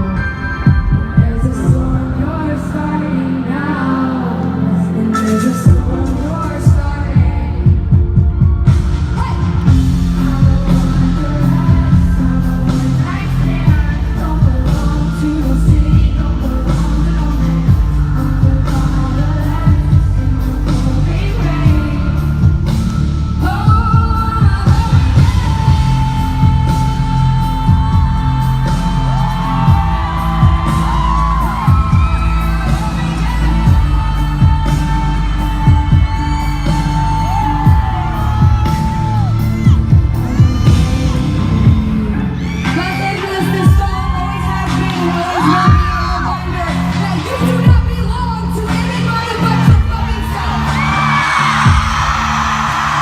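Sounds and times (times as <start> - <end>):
live pop music: 0.0 - 53.0
woman singing: 0.0 - 53.0
heavy drum beat: 5.7 - 15.0, 21.7 - 42.6, 43.5 - 48.6, 49.4 - 53.0.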